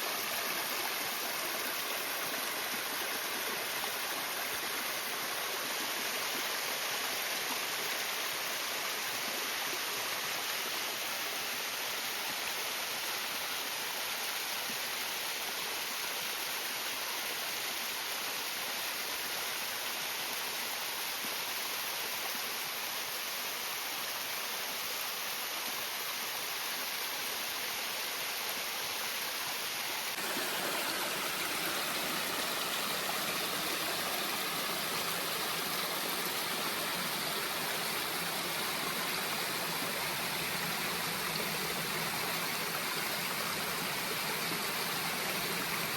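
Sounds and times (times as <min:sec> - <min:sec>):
waterfall rushing: 0:30.1 - 0:45.9.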